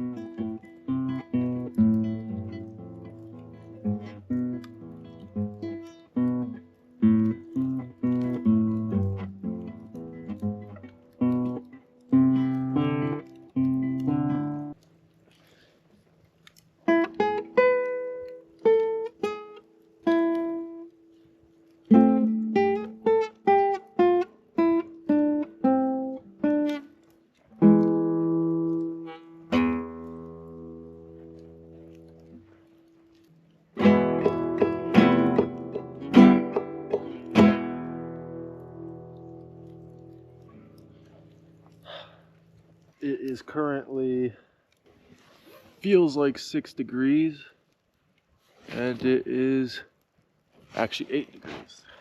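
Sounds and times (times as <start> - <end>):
acoustic guitar playing: 0.0 - 15.5, 16.5 - 44.2.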